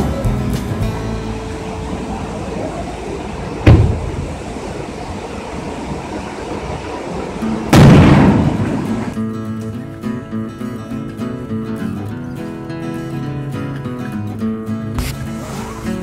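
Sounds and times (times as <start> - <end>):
background music: 0.0 - 2.6
steady rushing noise: 0.6 - 9.3
loud booms: 3.6 - 4.4, 7.7 - 9.2.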